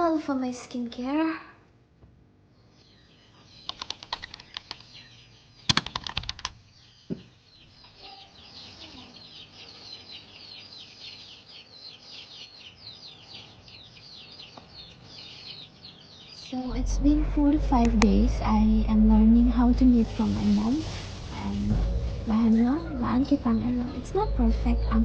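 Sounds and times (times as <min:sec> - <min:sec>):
birds chirping: 0:02.5 - 0:25.0
sharp clicks: 0:03.6 - 0:05.0, 0:05.7 - 0:06.6.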